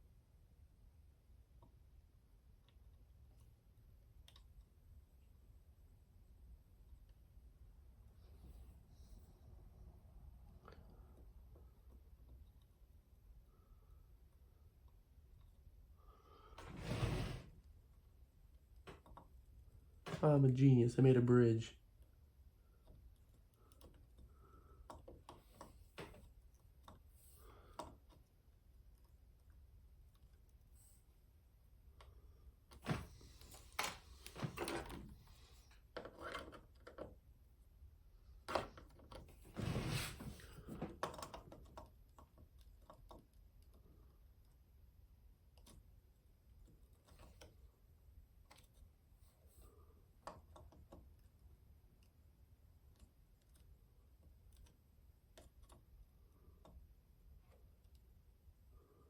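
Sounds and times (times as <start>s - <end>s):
tools clicking and knocking on a table: 35.9s - 37.2s.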